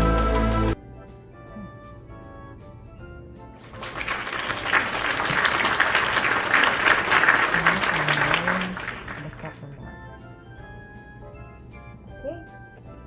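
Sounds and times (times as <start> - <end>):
soft background music: 0.0 - 13.0
applause: 3.6 - 9.8.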